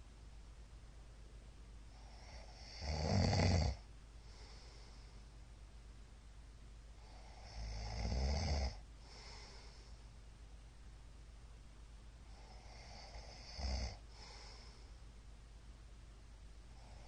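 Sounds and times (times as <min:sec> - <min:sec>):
man snoring: 0:02.0 - 0:03.8, 0:07.0 - 0:09.6, 0:12.4 - 0:14.5
soft breathy exhale: 0:09.0 - 0:10.0.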